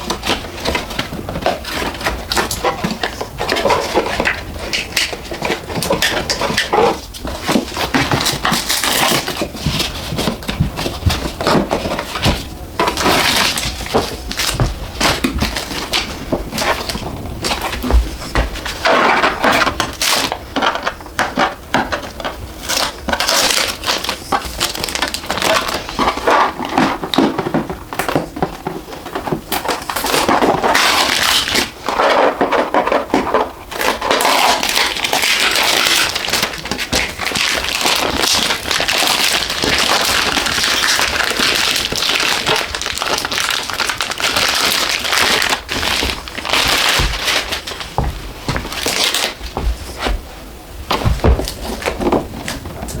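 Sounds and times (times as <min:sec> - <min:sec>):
packing material crinkling: 0:00.0 - 0:53.0.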